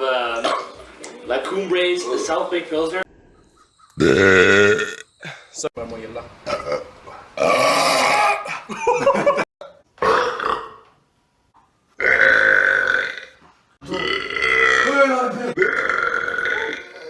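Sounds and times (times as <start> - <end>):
men burping: 4.0 - 5.5, 6.5 - 10.8, 12.0 - 17.0.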